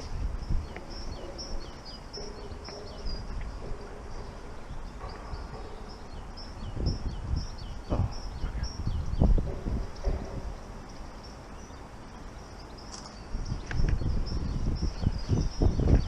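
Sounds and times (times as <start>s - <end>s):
small birds chirping: 0.0s - 16.0s
dull thumps: 9.2s - 10.7s.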